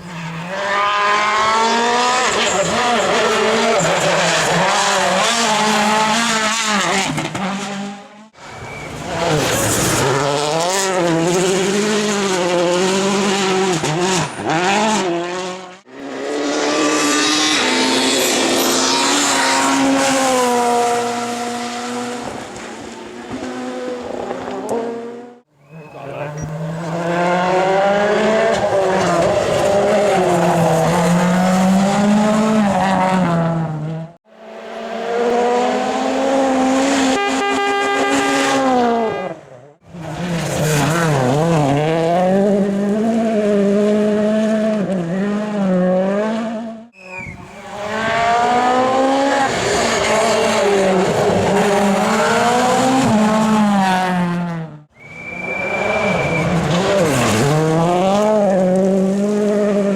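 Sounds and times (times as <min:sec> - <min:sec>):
rally car engines revving: 0:00.0 - 0:59.9.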